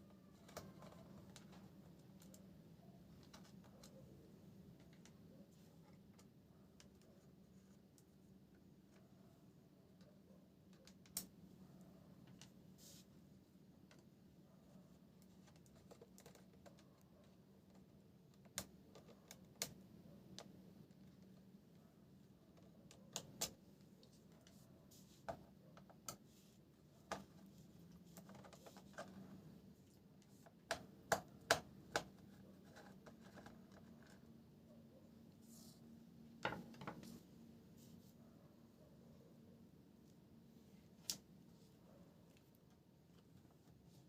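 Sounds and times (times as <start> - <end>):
hands clicking and tapping tools: 30.2 - 33.8.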